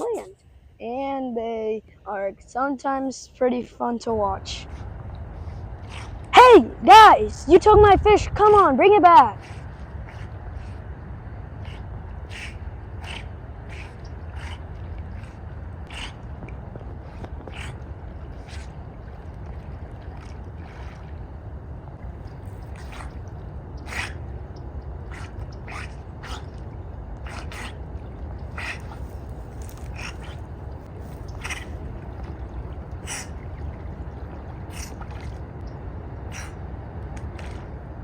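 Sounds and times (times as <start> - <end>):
steady low rumble: 0.0 - 38.0
otters snorting: 4.1 - 18.9, 22.3 - 24.3, 25.0 - 33.5, 34.6 - 35.5, 36.3 - 36.6, 37.2 - 37.8.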